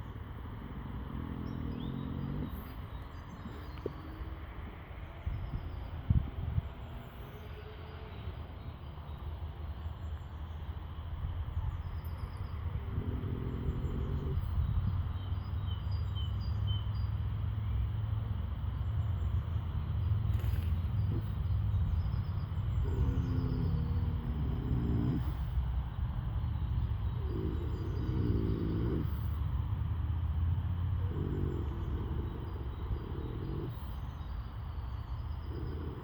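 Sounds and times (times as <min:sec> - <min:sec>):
horse snoring: 0:00.0 - 0:04.1, 0:12.8 - 0:14.7, 0:22.7 - 0:25.6, 0:27.2 - 0:29.4, 0:31.0 - 0:34.2, 0:35.3 - 0:36.0
birds chirping faintly: 0:00.0 - 0:36.0.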